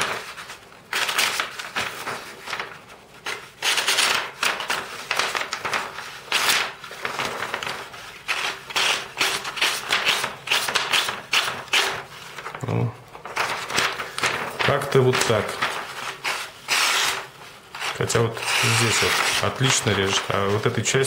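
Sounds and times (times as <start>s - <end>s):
knife slicing through paper: 13.5s - 20.8s.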